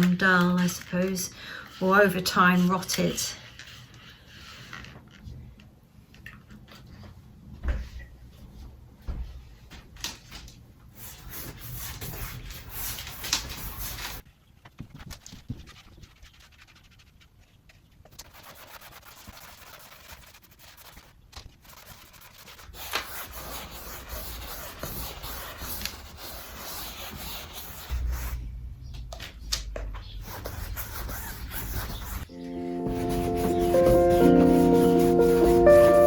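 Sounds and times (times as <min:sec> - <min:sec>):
brush rubbing on canvas: 0:15.4 - 0:17.5, 0:18.1 - 0:28.4, 0:30.2 - 0:36.0.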